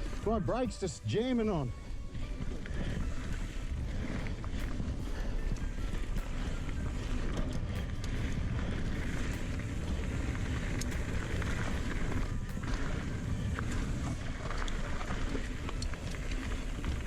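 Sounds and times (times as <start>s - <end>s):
bike tyres rumbling on dirt: 0.0s - 17.0s
wind buffeting microphone: 0.0s - 17.0s
bike clicks and rattles: 1.8s - 17.0s.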